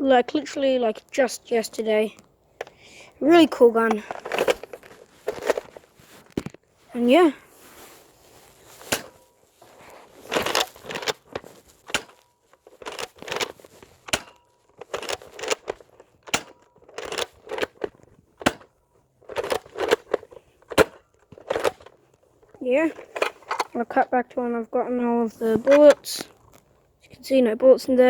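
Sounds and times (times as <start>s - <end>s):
toy blaster bolt rattling: 3.5s - 5.8s, 8.8s - 23.8s
toy blaster shot snapping: 11.9s - 18.7s, 19.3s - 21.9s.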